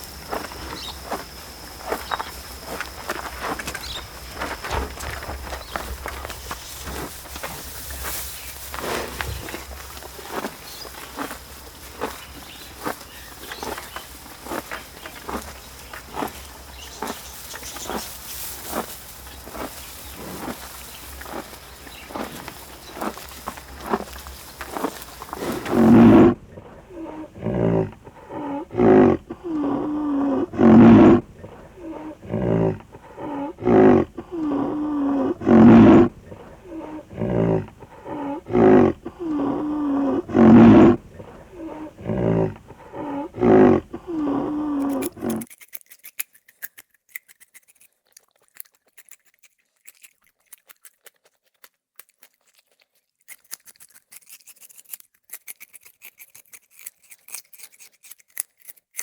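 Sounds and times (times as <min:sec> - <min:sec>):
animal calling: 0:00.0 - 0:45.5.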